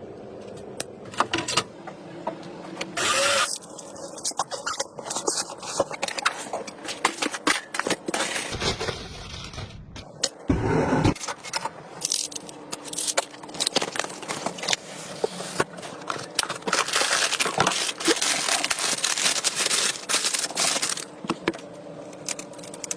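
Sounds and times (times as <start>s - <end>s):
clicks and scrapes of handling: 2.8s - 8.6s
packaging crinkling: 3.0s - 8.8s, 11.2s - 22.9s.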